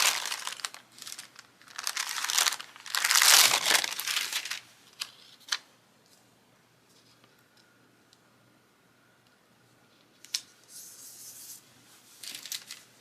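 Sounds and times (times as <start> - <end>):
paper sheets rustling and crinkling: 0.0 - 5.6, 12.1 - 12.9.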